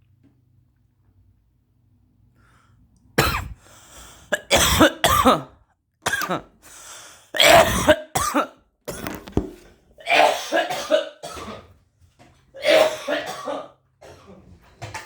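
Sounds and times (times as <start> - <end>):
person coughing harshly: 3.2 - 3.7, 4.3 - 6.6, 7.4 - 9.1, 10.0 - 11.7, 12.6 - 14.3.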